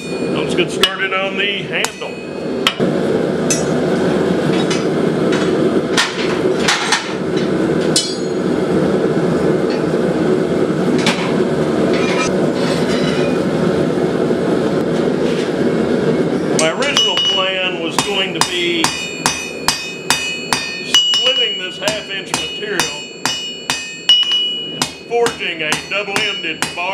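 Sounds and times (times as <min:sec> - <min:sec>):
gas forge burner roaring: 0:00.0 - 0:26.9
steel clinking on steel: 0:08.0 - 0:08.5, 0:16.6 - 0:26.9.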